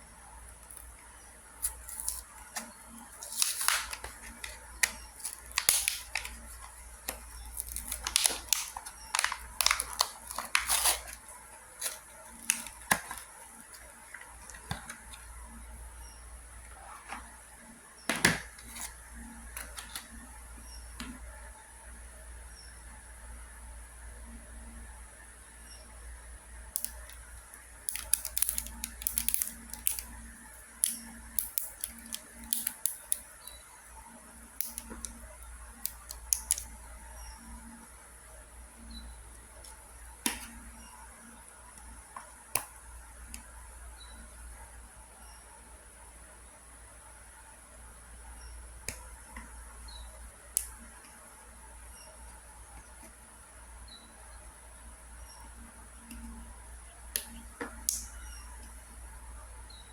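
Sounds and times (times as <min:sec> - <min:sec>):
low steady hum: 0:00.0 - 0:59.9
plastic links clicking: 0:27.9 - 0:30.1.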